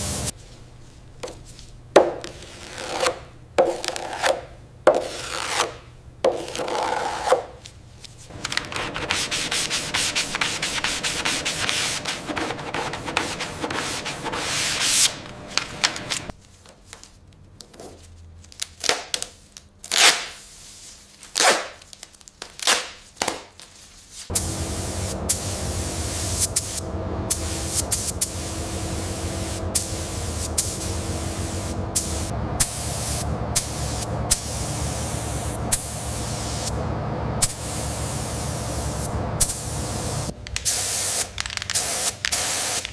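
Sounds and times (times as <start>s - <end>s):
abrasive sanding: 8.3s - 15.2s.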